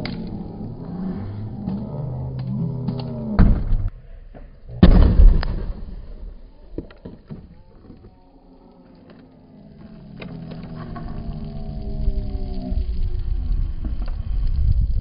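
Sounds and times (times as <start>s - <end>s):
low wavering tones: 0.0s - 4.8s, 7.5s - 14.8s
slowed explosion blasts: 4.6s - 6.9s.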